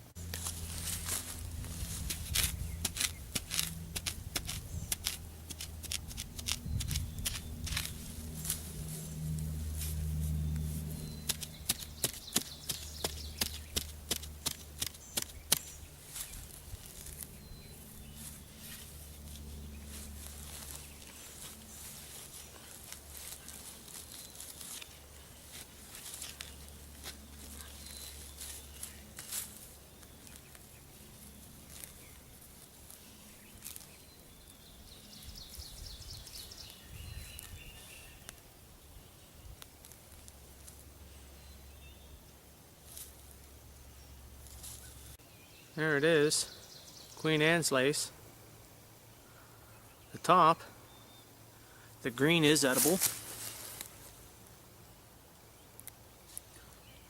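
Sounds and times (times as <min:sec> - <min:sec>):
rustling and scraping of digging: 0:00.0 - 0:38.6, 0:39.4 - 0:42.0, 0:42.7 - 0:45.4, 0:52.1 - 0:54.8, 0:55.7 - 0:57.0
hand tool chopping into ground: 0:01.9 - 0:08.6, 0:11.2 - 0:16.4
bird chirping: 0:01.9 - 0:26.8, 0:27.4 - 0:39.7, 0:43.8 - 0:47.9
scattered clicks: 0:11.2 - 0:15.7.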